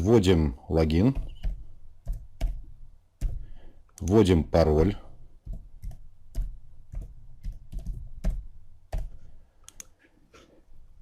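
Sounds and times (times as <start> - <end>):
keyboard typing clicks: 5.4 - 9.9.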